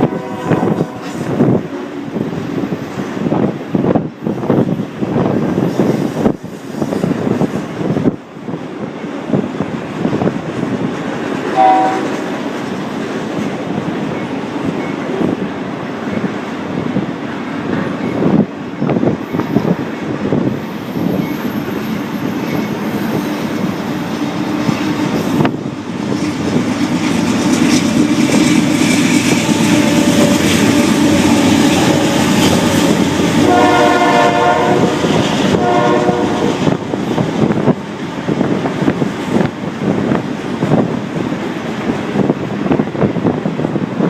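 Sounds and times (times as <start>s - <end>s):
locomotive air horn: 0.0s - 1.3s, 11.6s - 12.3s, 31.9s - 36.7s
train wheels clacking: 19.2s - 42.7s.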